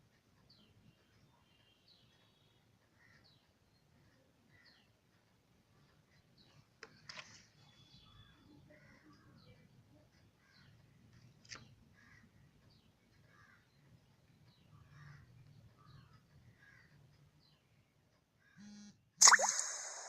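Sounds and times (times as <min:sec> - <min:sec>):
faint bird calls: 0:06.4 - 0:09.7
sharp click: 0:19.2 - 0:20.0.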